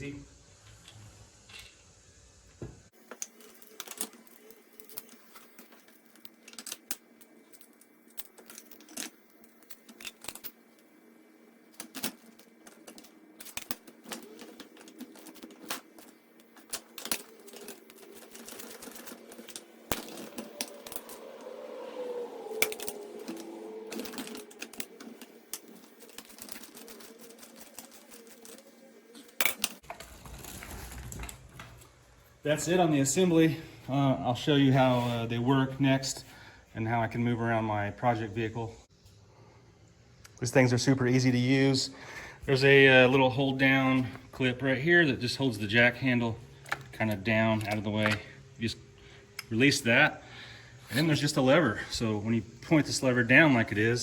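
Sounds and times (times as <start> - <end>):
wavering whine: 3.1 - 36.2
metal bolts clicking and clinking: 11.7 - 21.5, 22.6 - 29.8.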